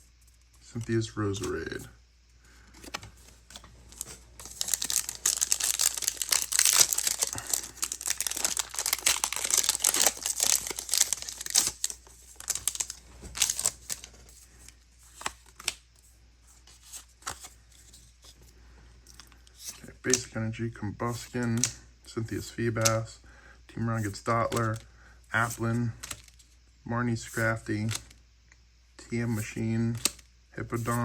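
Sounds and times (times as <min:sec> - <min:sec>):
foil wrapper crinkling and tearing: 0:02.8 - 0:14.1.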